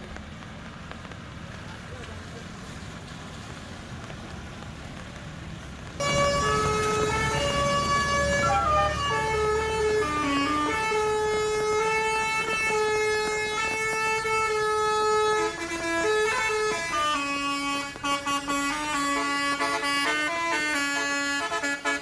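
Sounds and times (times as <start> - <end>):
musical air horn tune: 6.0 - 22.0.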